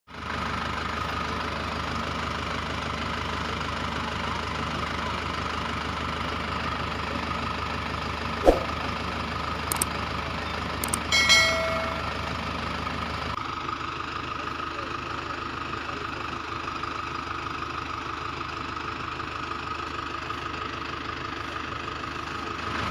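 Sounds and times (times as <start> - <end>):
sharp knock: 8.5 - 8.8
tractor engine running: 8.7 - 13.3, 17.7 - 22.8.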